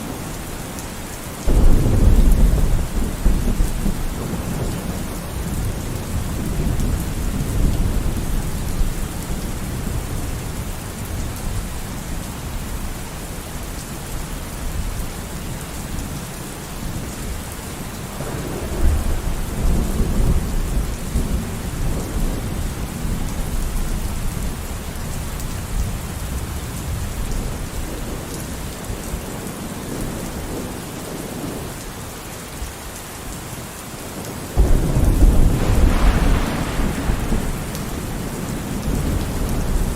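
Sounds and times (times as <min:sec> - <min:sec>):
heavy rain: 0:00.0 - 0:39.9
loud thunder crack: 0:01.5 - 0:08.8, 0:34.6 - 0:39.9
rolling thunder: 0:01.5 - 0:11.6, 0:18.2 - 0:24.4, 0:34.6 - 0:39.9.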